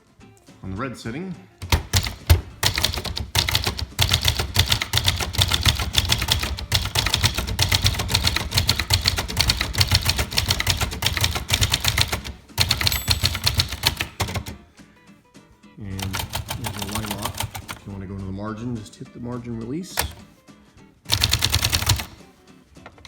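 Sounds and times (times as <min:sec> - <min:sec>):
typewriter keystrokes: 0:01.6 - 0:14.6, 0:16.0 - 0:17.9, 0:20.0 - 0:20.3, 0:21.1 - 0:22.2
typewriter margin bell: 0:03.5 - 0:14.5, 0:16.2 - 0:17.6.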